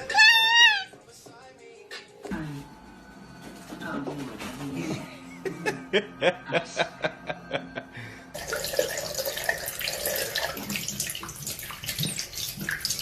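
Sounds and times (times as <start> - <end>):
tap water running into sink: 8.4 - 13.0.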